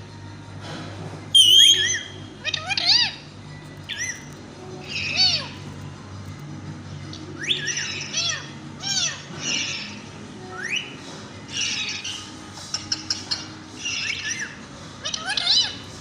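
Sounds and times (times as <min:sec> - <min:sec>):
parrot shrill calls: 0:01.4 - 0:03.2.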